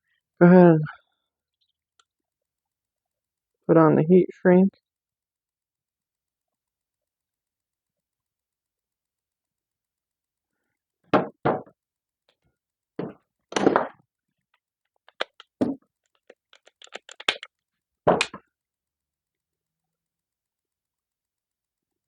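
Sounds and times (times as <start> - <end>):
small ticks: 1.2 - 3.6, 14.4 - 17.8
tools knocking and clicking: 15.0 - 17.5.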